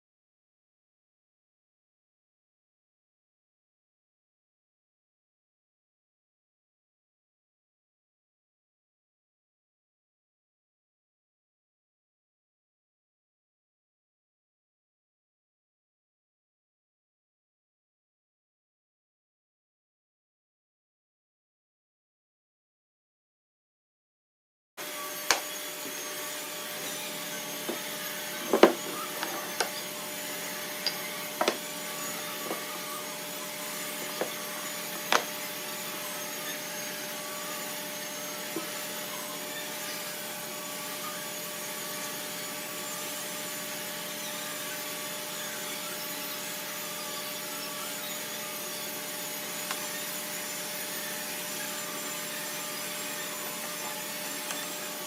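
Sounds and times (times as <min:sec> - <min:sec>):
machine motor humming: 0:24.8 - 0:37.0
wooden knocks and taps: 0:28.5 - 0:29.7.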